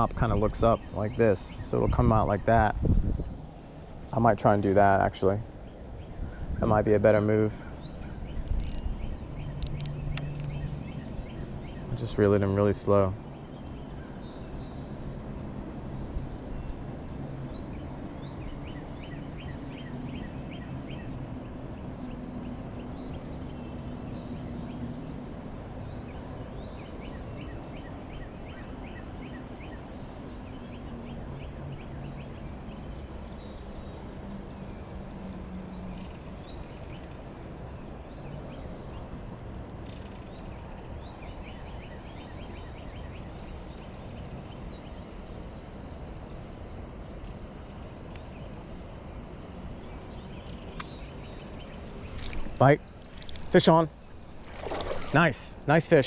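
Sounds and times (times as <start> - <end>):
birds chattering: 50.9 - 56.0.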